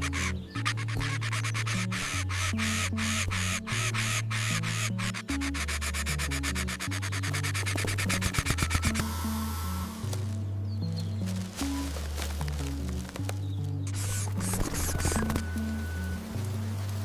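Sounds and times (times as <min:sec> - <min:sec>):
scratchy ticking rhythm: 0:00.0 - 0:10.1, 0:12.5 - 0:15.4.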